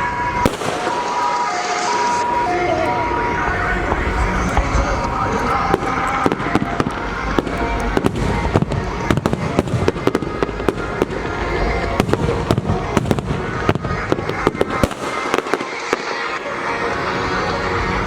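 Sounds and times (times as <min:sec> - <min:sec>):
fireworks bangs: 0:00.0 - 0:18.0.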